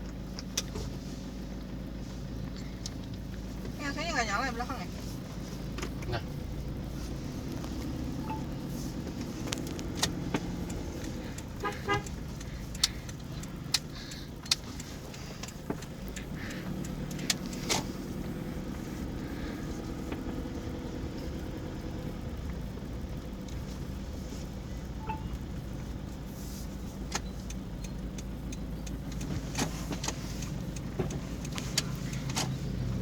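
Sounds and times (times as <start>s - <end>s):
diesel engine running: 0.0s - 33.0s
sharp clicks: 7.5s - 18.3s, 27.0s - 33.0s.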